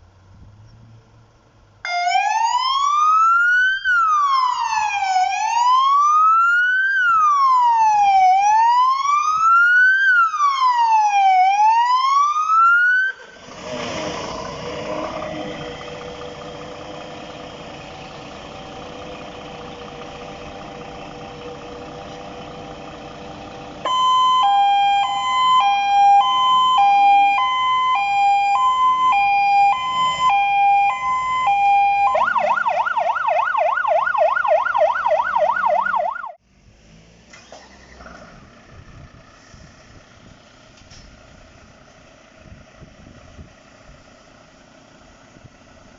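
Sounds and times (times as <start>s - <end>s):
two-tone hi-lo siren: 1.8s - 13.4s, 23.8s - 36.4s
fast yelp siren: 1.9s - 13.4s, 23.8s - 36.4s
truck engine running: 13.2s - 45.9s.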